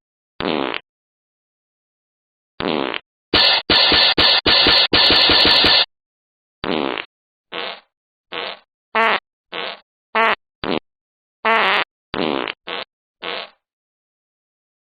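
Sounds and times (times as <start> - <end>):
electronic fart sounds: 0.4 - 0.8, 2.6 - 5.9, 6.6 - 10.8, 11.5 - 13.6.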